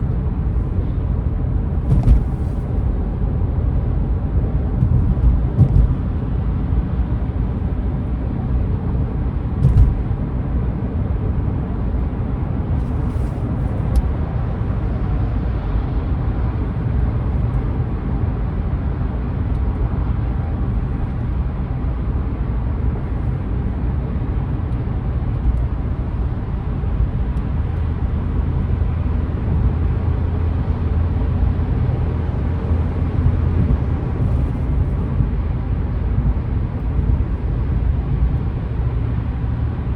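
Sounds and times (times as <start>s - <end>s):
car road and engine rumble: 0.0s - 39.9s
brief knocks: 1.9s - 2.6s, 9.6s - 10.0s.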